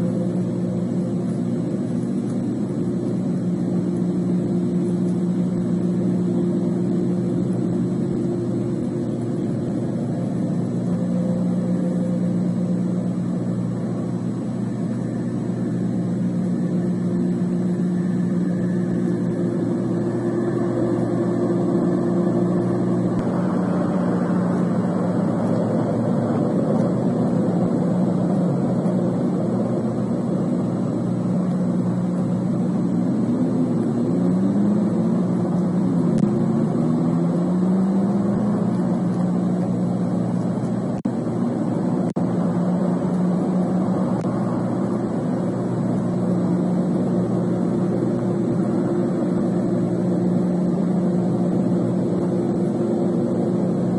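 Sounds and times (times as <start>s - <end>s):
low mechanical drone: 0.0s - 53.9s
engine-like tone rising and falling: 16.5s - 53.9s.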